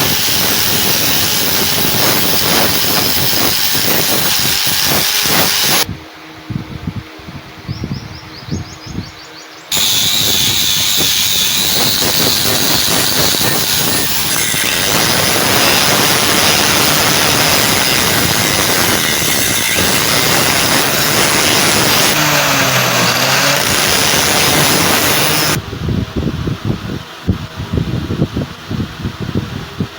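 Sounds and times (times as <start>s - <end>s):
power tool grinding steel: 0.0s - 5.9s, 9.7s - 25.6s.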